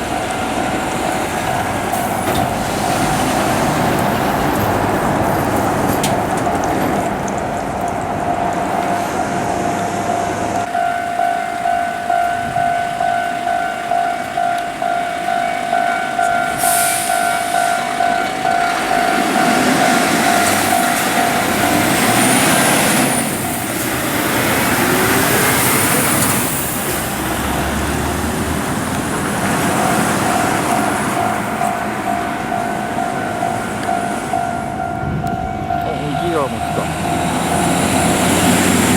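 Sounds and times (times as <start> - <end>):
level crossing warning bell: 0.0 - 38.9
truck engine and tyres passing: 0.0 - 38.9.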